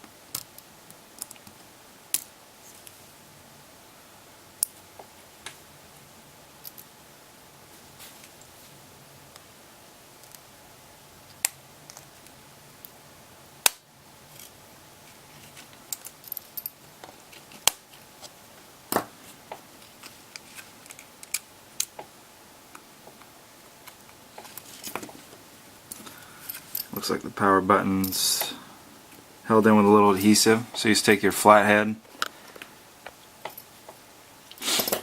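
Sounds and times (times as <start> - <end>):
rustling: 7.6 - 8.8, 14.3 - 18.4, 19.1 - 21.4, 23.0 - 27.3.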